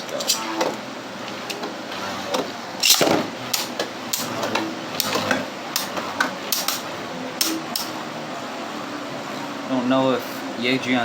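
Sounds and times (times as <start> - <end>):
spinning tops clacking together: 0.0 - 0.5, 2.8 - 4.3, 5.0 - 6.8
spinning tops clattering: 0.0 - 0.6, 2.8 - 4.3.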